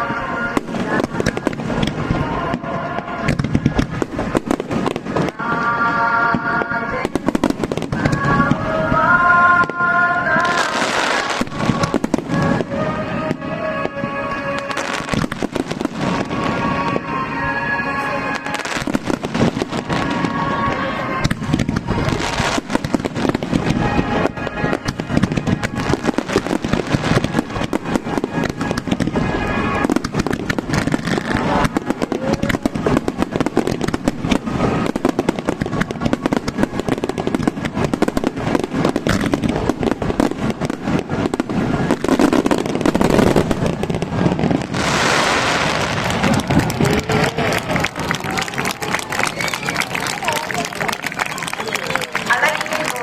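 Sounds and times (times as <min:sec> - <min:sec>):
fireworks bangs and crackling: 0:00.0 - 0:53.0
music playing: 0:04.4 - 0:22.5.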